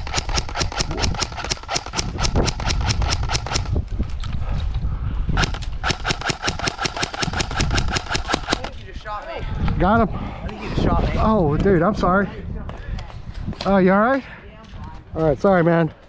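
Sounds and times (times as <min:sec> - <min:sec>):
airsoft gun firing full auto: 0:05.4 - 0:08.7.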